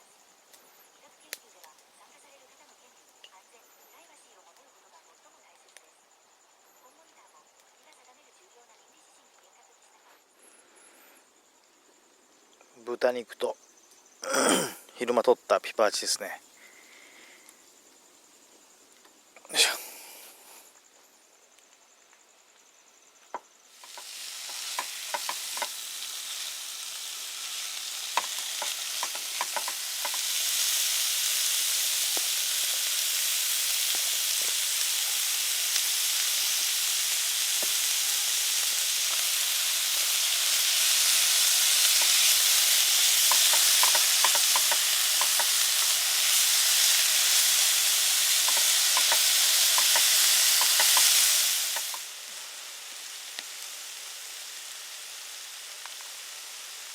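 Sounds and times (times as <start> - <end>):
meat sizzling in a pan: 0.0 - 5.1, 22.6 - 56.9
sharp pops and clicks: 23.3 - 26.5, 27.4 - 30.8, 32.0 - 33.0, 33.8 - 35.0, 37.5 - 52.1, 55.8 - 56.2.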